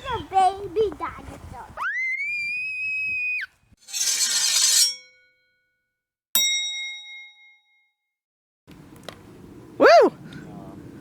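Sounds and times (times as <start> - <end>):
bell-like ding: 6.4 - 8.0.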